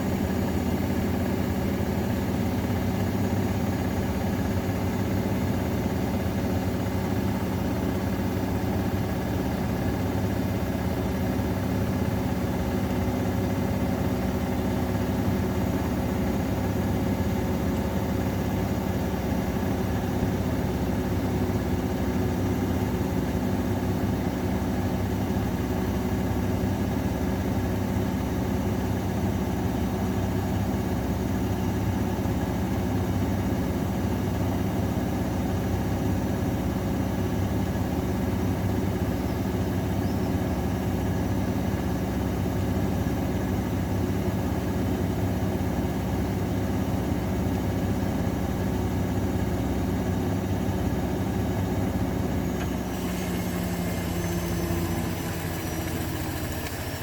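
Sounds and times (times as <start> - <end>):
washing machine motor and drum hum: 0.0 - 57.0.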